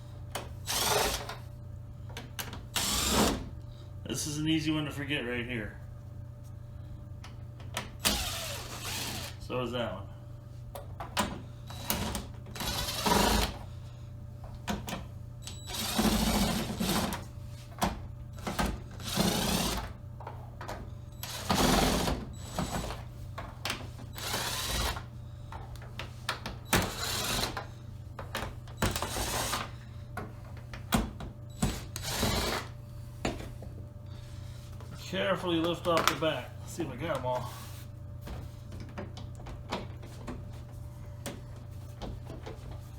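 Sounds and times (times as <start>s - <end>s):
steady low hum: 0.0s - 42.9s
power screwdriver running: 0.6s - 1.4s, 2.8s - 3.4s, 8.0s - 9.4s, 11.7s - 13.6s, 15.6s - 17.2s, 18.5s - 19.9s, 21.2s - 22.9s, 24.1s - 25.0s, 26.7s - 27.6s, 28.9s - 29.7s, 31.6s - 32.7s.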